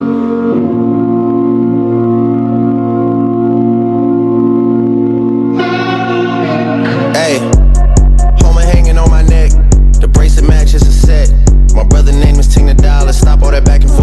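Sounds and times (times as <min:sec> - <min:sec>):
sustained organ chord: 0:05.3 - 0:08.4
bright organ notes: 0:05.5 - 0:07.6.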